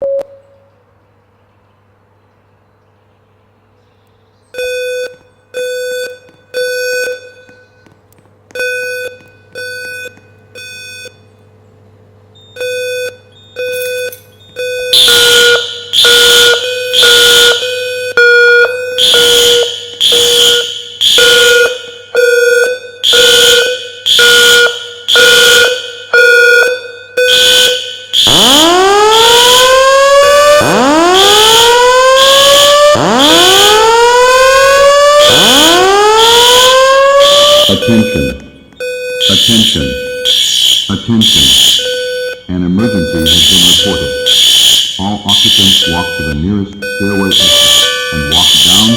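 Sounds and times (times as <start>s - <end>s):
fire alarm horns beeping: 4.5s - 7.9s, 8.5s - 11.6s, 12.3s - 48.9s
siren-like whoop tone: 27.4s - 38.1s, 47.0s - 48.9s.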